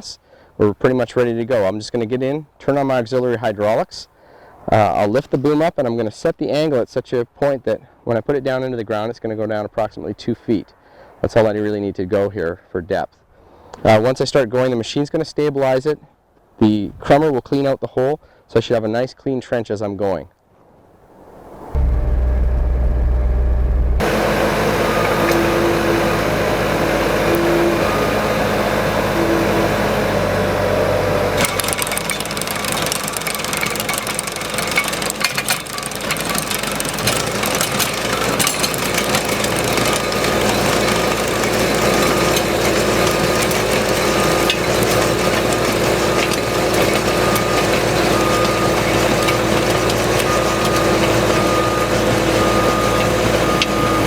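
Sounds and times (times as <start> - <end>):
harsh clattering: 21.8 - 26.4, 31.4 - 54.0
loader engine running hard: 21.8 - 54.0
trencher chain digging: 31.3 - 54.0.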